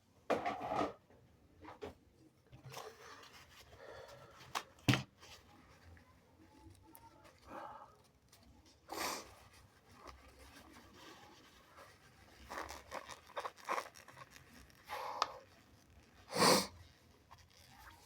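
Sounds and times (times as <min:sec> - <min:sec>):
tissue crinkling: 0:09.3 - 0:18.0
loud nasal burst: 0:16.3 - 0:16.7
short bursts of breath: 0:16.3 - 0:16.7
person sniffling: 0:16.3 - 0:16.8.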